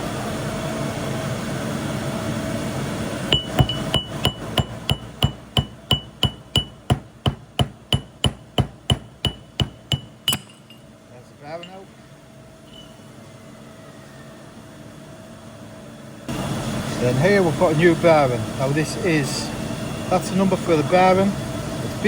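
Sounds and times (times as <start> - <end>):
steady background noise: 2.4 - 12.8
hammer tapping on metal: 3.3 - 10.8.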